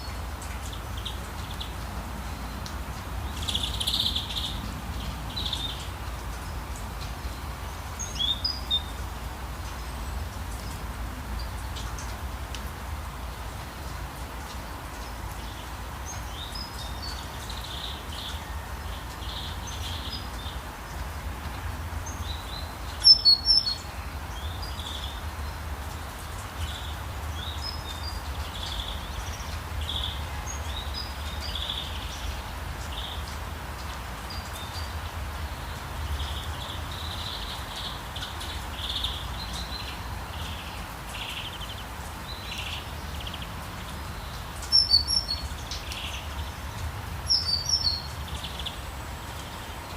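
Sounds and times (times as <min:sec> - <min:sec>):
rain hiss: 0:00.0 - 0:49.9
songbirds chirping: 0:00.0 - 0:49.9.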